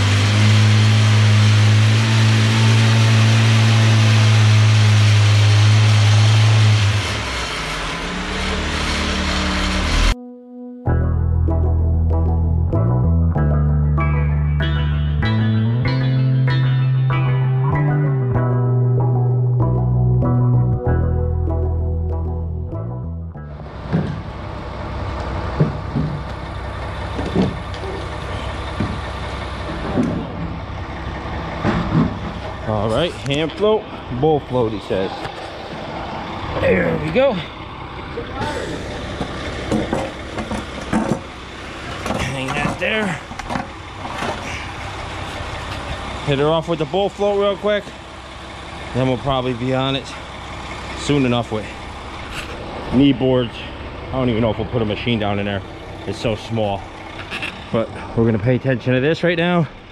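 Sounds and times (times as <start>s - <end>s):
engine running then idling: 0.0s - 10.2s, 23.4s - 59.9s.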